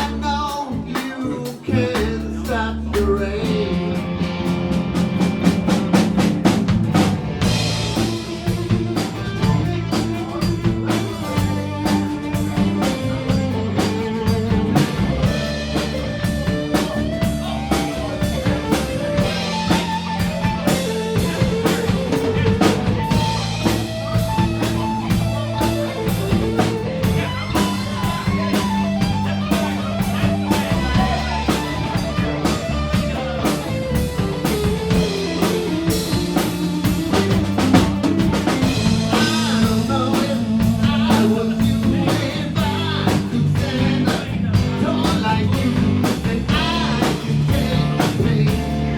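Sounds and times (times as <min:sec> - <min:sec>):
bass: 0:00.0 - 0:48.9
drum kit with rimshots: 0:00.0 - 0:48.9
electric guitar lead: 0:03.4 - 0:48.9.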